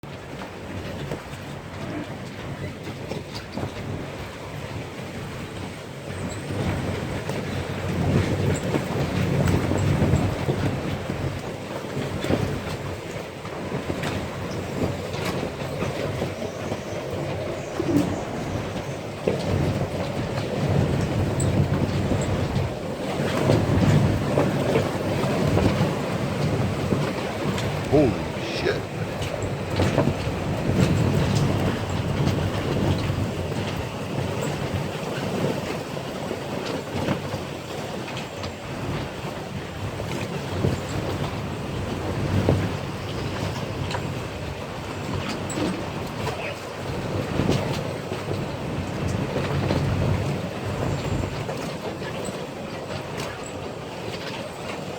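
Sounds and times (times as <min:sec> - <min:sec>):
boats knocking and creaking: 0:00.0 - 0:54.9
storm wind on microphone: 0:00.0 - 0:54.9
storm wind rumbling: 0:13.6 - 0:36.6.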